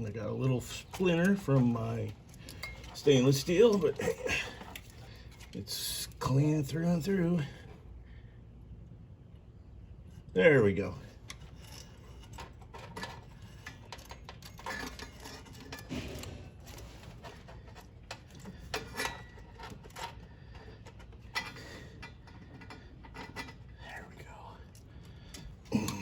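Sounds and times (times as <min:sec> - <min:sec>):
metal parts clicking: 0:00.4 - 0:05.6, 0:11.2 - 0:23.8
metal parts scraping: 0:00.4 - 0:05.9, 0:11.1 - 0:23.8.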